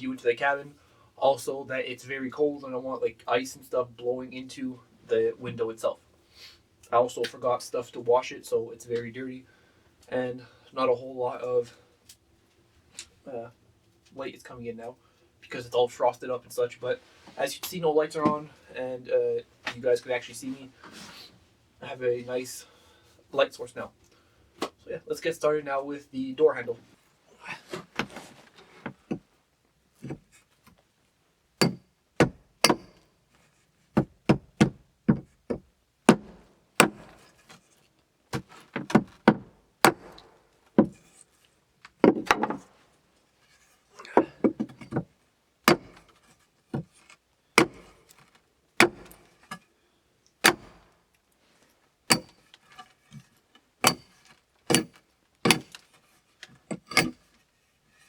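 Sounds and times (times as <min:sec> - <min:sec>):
hatchet chopping wood: 0:31.6 - 0:33.1, 0:34.0 - 0:37.5, 0:38.3 - 0:41.0, 0:45.7 - 0:46.2, 0:47.6 - 0:48.2, 0:48.8 - 0:49.6, 0:50.4 - 0:51.0, 0:52.1 - 0:52.5, 0:53.8 - 0:55.8, 0:56.7 - 0:57.2.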